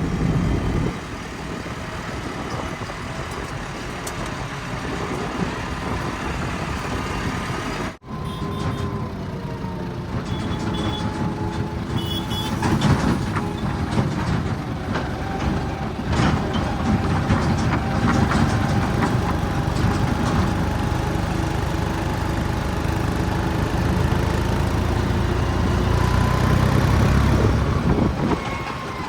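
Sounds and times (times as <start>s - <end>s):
diesel engines running under load: 0.0s - 29.0s
engine with thin whine: 0.0s - 29.0s
knocks and clatter: 2.4s - 21.9s.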